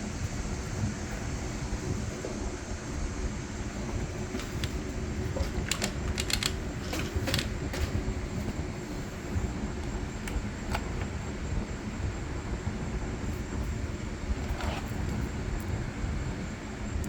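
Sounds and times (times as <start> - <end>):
pole saw parts clicking and clinking: 5.4 - 7.9.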